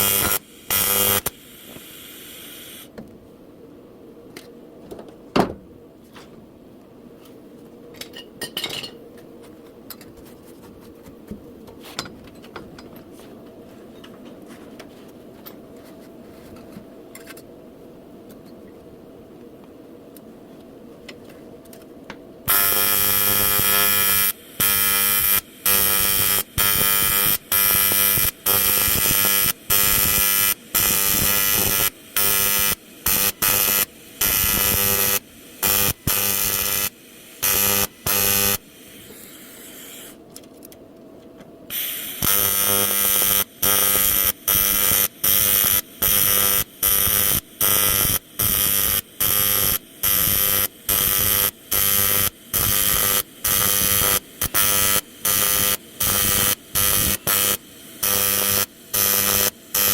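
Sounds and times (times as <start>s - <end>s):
welding arc buzzing: 0.0s - 2.9s, 22.5s - 40.2s, 41.7s - 59.9s.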